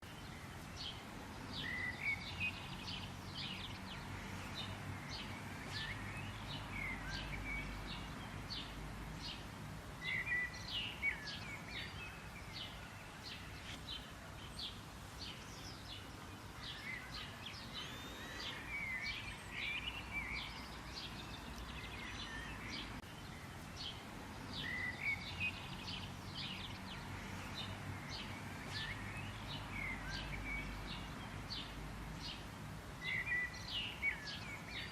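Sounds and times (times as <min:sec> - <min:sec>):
songbirds chirping and singing: 0:00.0 - 0:34.9.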